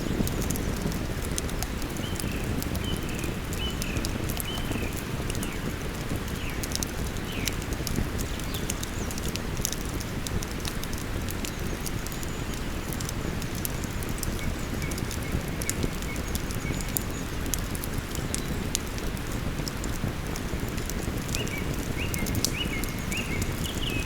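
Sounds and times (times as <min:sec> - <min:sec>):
campfire crackling and popping: 0:00.0 - 0:24.0
bird chirping: 0:21.4 - 0:24.0.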